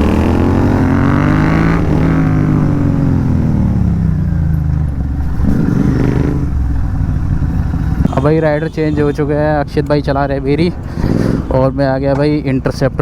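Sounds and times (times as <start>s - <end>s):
motorcycle engine accelerating: 0.0s - 8.5s.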